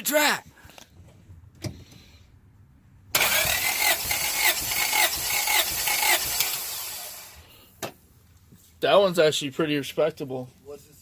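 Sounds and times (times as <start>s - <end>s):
engine cranking on starter motor: 3.1s - 7.4s.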